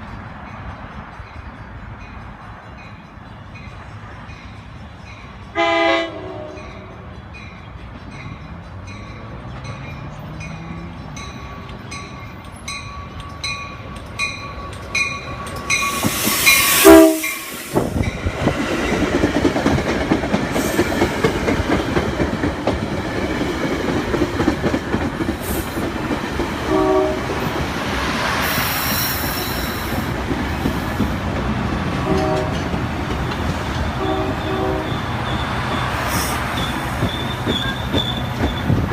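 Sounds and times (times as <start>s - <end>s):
train rumble and wheel clatter: 0.0s - 38.9s
train rushing past: 0.0s - 38.9s
train horn blast: 5.5s - 7.0s, 16.6s - 17.8s, 26.6s - 27.4s, 32.0s - 32.7s, 34.0s - 35.4s.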